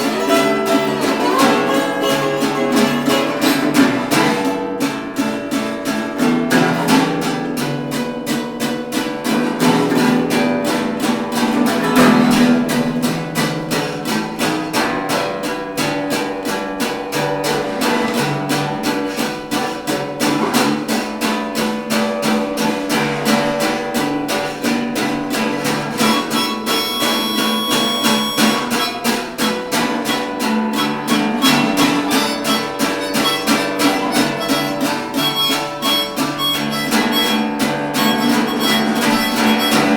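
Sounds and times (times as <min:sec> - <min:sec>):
strummed acoustic guitar: 0:00.0 - 0:39.9
ukulele: 0:00.0 - 0:39.9.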